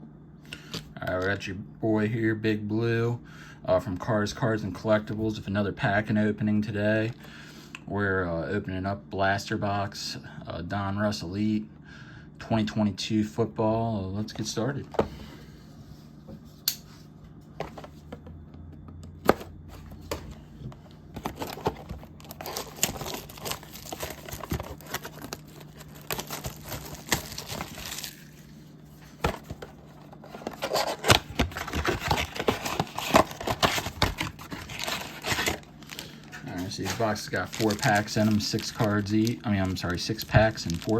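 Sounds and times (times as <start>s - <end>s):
plastic wrap crinkling: 21.2s - 40.9s.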